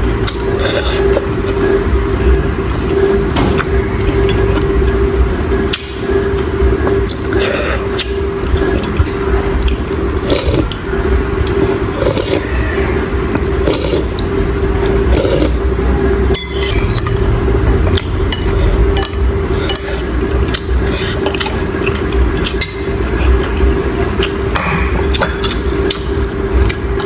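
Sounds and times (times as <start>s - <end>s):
steady hum: 0.0s - 27.0s
utensils clinking against bowl: 0.2s - 4.8s, 11.4s - 14.2s, 14.8s - 15.6s, 16.3s - 27.0s.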